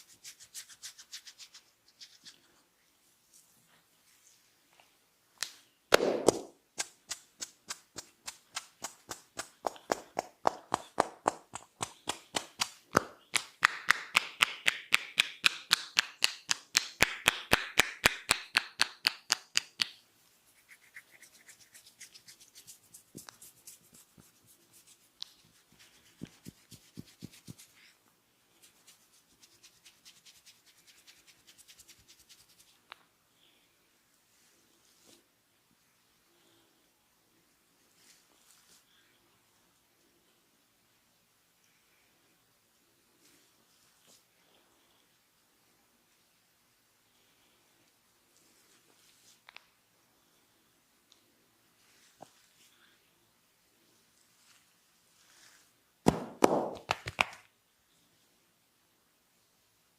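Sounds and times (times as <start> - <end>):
hair rustling: 0.0 - 2.6, 6.2 - 17.8, 20.4 - 27.9, 28.5 - 32.9
rubbing and scratching hair: 0.0 - 4.9, 6.3 - 33.0, 53.8 - 57.5
hands slapping head: 5.4 - 20.0, 56.1 - 57.5.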